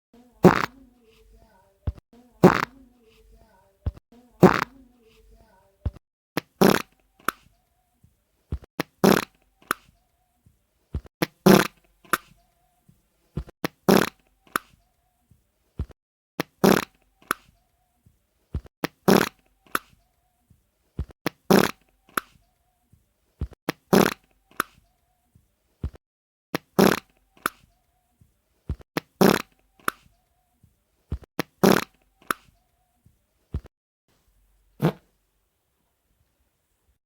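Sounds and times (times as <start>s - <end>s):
wet fart sound effect: 0.4s - 0.8s, 2.4s - 2.8s, 4.4s - 4.7s, 6.4s - 6.9s, 8.8s - 9.4s, 13.4s - 14.2s, 16.4s - 17.0s, 18.8s - 19.4s, 21.3s - 21.8s, 23.7s - 24.3s, 26.6s - 27.1s, 29.0s - 29.5s, 31.4s - 32.0s, 34.8s - 35.1s.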